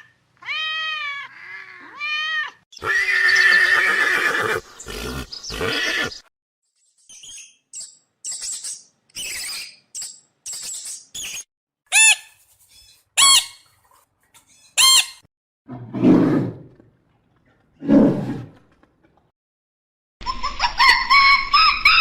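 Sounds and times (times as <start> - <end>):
loud short squeaky calls: 10.7 - 13.6, 14.5 - 15.3.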